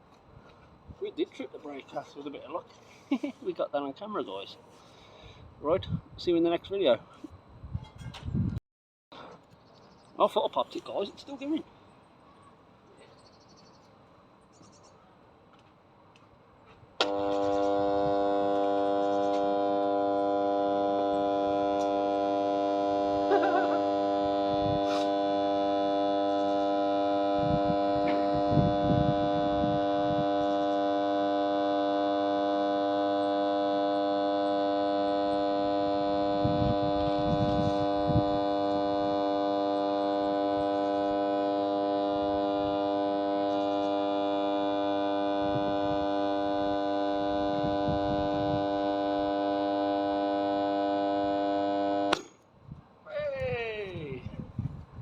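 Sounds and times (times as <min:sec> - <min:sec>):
electric motor humming whine: 0:17.0 - 0:52.2.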